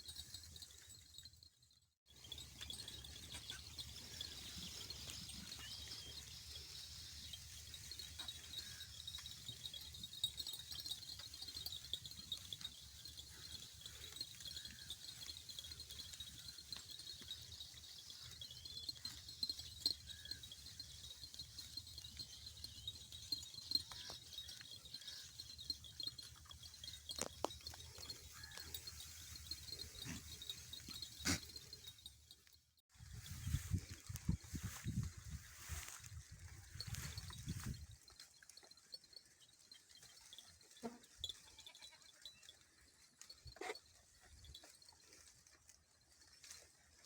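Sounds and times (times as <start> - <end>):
small birds chirping: 2.1 - 32.5
small bird chirps: 2.2 - 9.8.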